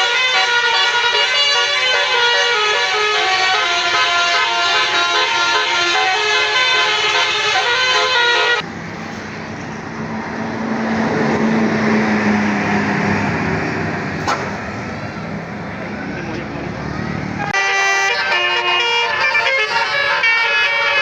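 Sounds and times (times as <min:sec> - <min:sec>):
bus musical horn: 0:00.0 - 0:08.6, 0:17.4 - 0:21.0
low steady horn note: 0:00.0 - 0:08.6, 0:17.6 - 0:21.0
road traffic noise: 0:00.0 - 0:21.0.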